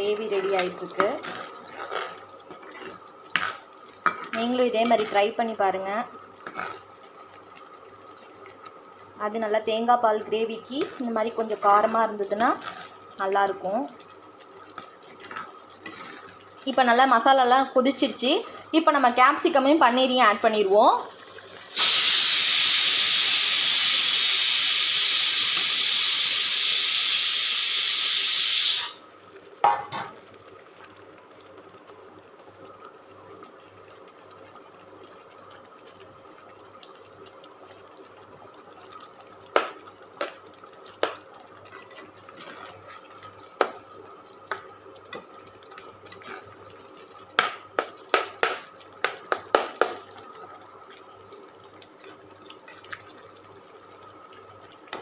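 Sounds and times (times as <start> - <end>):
pressure cooker steam hiss: 20.9 - 29.0.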